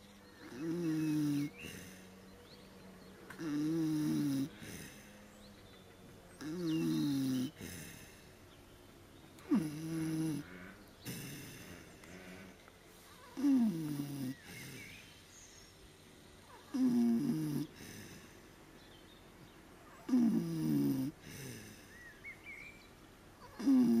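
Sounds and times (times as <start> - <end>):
pig snoring: 0.0 - 2.3, 3.3 - 5.6, 6.4 - 8.4, 9.4 - 15.1, 16.5 - 18.5, 20.0 - 22.2, 23.4 - 24.0
pig breathing quietly: 0.4 - 2.7, 3.3 - 8.8, 9.4 - 15.2, 16.8 - 18.7, 20.1 - 22.3.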